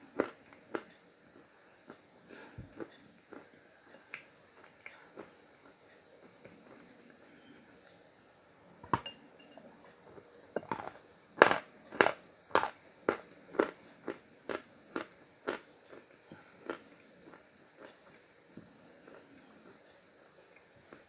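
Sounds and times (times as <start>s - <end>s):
crisp chewing crunches: 10.6s - 18.0s.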